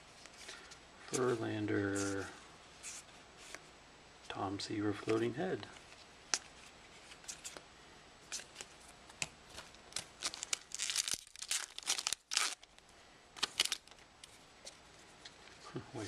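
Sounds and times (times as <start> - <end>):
wrapper tearing and crinkling: 9.9 - 12.8, 13.4 - 14.0.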